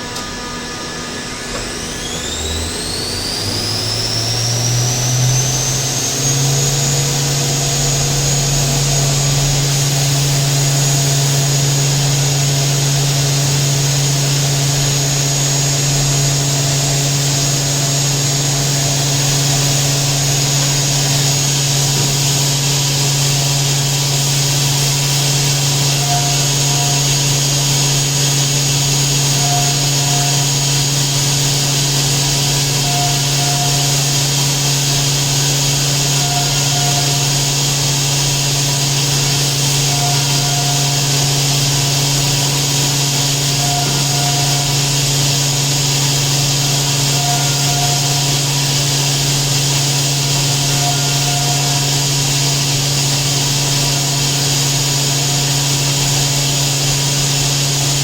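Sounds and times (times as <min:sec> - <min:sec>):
machine humming and hissing: 0:00.0 - 0:58.0
faint short double tone: 0:36.0 - 0:37.5, 0:47.1 - 0:48.4.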